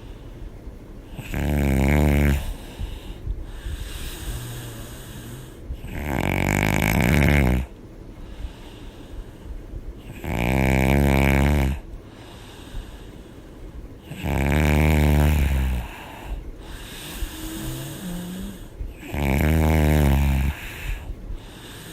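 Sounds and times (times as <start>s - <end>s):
quiet breaths: 0.0s - 21.9s
woman snoring: 1.1s - 3.1s, 3.8s - 7.8s, 10.0s - 11.8s, 14.1s - 21.9s.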